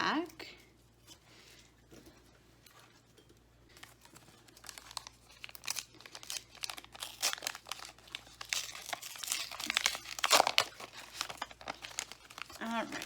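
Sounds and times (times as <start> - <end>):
plastic wrapper crinkling and tearing: 3.7 - 13.0.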